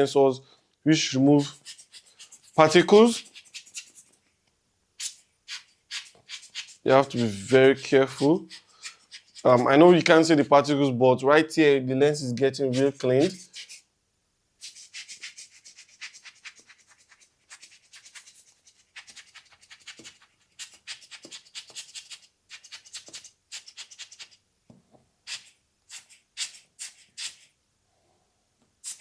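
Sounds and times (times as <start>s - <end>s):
hand blower hissing air: 7.0s - 8.7s.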